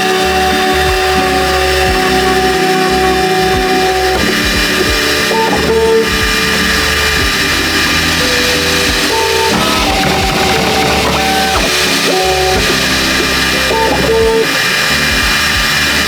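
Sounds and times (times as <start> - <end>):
background music with steady beat: 0.0 - 16.0.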